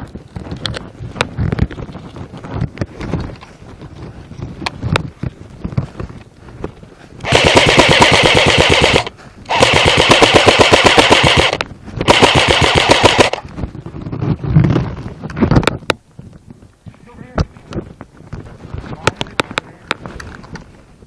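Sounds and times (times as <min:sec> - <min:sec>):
airsoft gun full auto bursts: 0:07.2 - 0:13.4.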